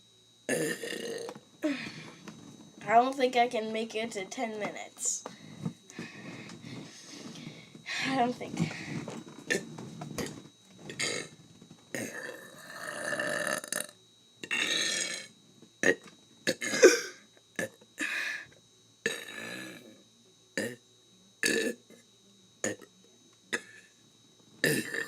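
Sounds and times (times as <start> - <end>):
man burping: 0.5 - 2.0, 9.5 - 10.4, 11.0 - 11.3, 11.9 - 18.1, 19.0 - 20.0, 20.6 - 20.8, 21.4 - 21.8, 22.6 - 22.9, 23.5 - 23.8, 24.6 - 25.0.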